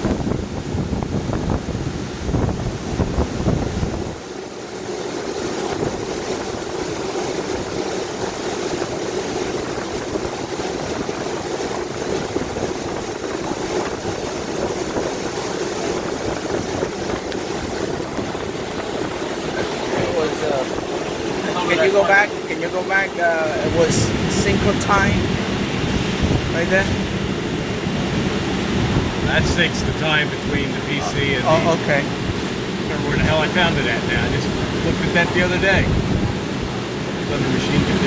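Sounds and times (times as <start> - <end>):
machinery hum and hiss: 23.4 - 25.2
heavy low rumble: 23.4 - 38.0.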